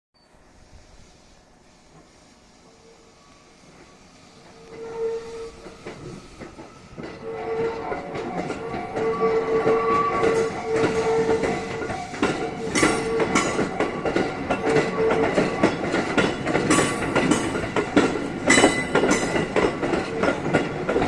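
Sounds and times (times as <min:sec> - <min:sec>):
electric train tone: 0:00.2 - 0:21.0
wheels clicking over rail joints: 0:04.5 - 0:21.0.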